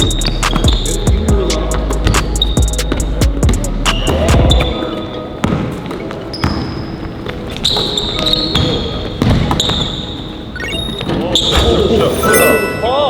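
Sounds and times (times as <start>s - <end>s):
basketball bouncing on gym court: 0.0s - 10.3s.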